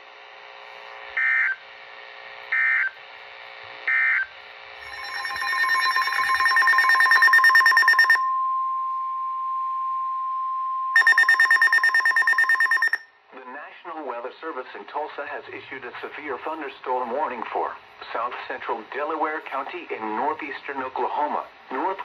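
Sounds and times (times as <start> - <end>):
fast-pulsing electronic alarm: 2.5 - 3.0, 3.9 - 8.4, 10.9 - 13.0
steady single-pitched warning tone: 3.9 - 13.1
data tone bursts: 4.8 - 9.0, 10.9 - 13.0.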